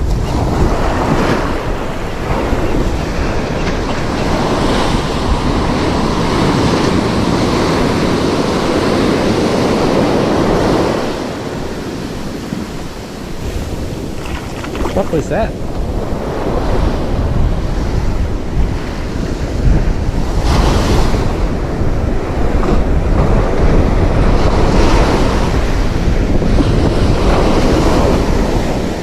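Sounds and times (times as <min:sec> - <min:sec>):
surf breaking on beach: 0:00.0 - 0:18.7
wind buffeting microphone: 0:00.0 - 0:29.0.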